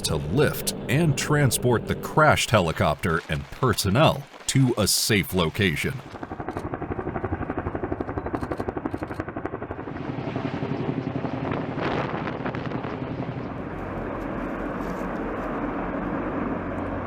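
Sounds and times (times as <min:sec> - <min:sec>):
helicopter rotor beating: 0:00.0 - 0:04.3.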